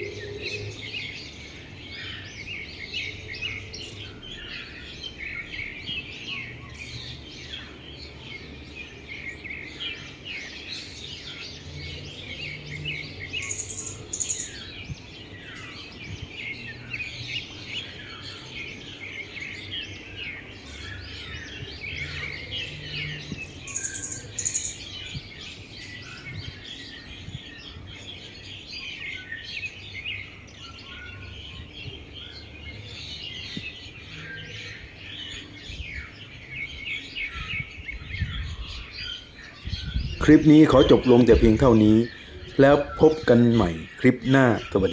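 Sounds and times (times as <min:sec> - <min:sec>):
small birds chirping chorus: 0:00.0 - 0:44.9
high sharp bird notes: 0:40.2 - 0:44.9.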